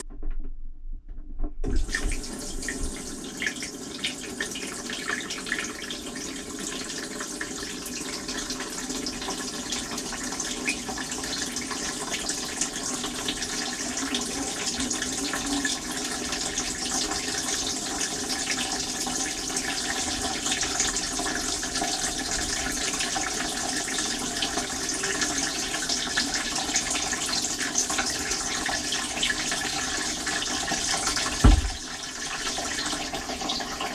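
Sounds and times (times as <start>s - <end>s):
dishwasher water spray hiss: 31.1s - 31.9s
dishwasher knocks: 31.2s - 31.9s.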